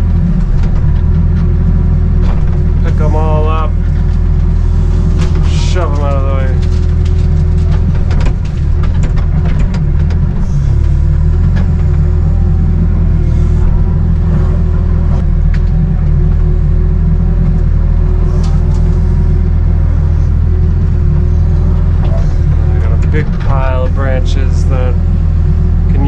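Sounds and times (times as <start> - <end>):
excavator diesel engine running: 0.0 - 26.0
branches cracking and knocking: 3.8 - 12.1.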